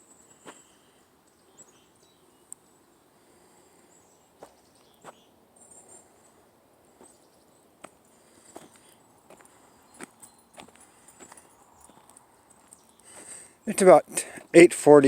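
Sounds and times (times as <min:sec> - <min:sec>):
footsteps on a trail: 0:04.4 - 0:06.3, 0:06.9 - 0:13.5.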